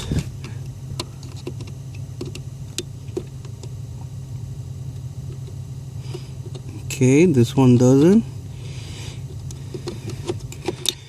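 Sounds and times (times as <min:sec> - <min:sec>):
probe tapping fuses: 0:00.0 - 0:03.8
steady low hum: 0:00.0 - 0:11.0.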